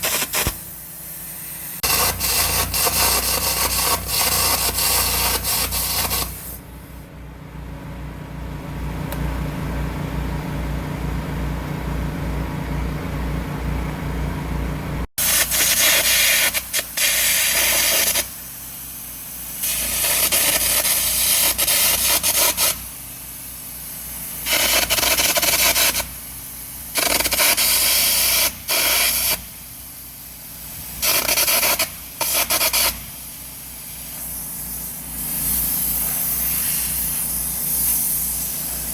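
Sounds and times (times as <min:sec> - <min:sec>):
arc gouging harsh hiss: 0:00.0 - 0:06.6, 0:15.2 - 0:26.2, 0:30.5 - 0:38.9
throbbing engine hum: 0:00.0 - 0:15.1.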